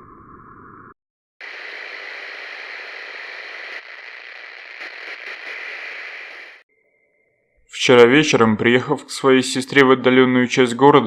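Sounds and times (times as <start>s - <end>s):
faint crackles: 1.4s - 6.6s
static-like hiss: 1.4s - 6.6s.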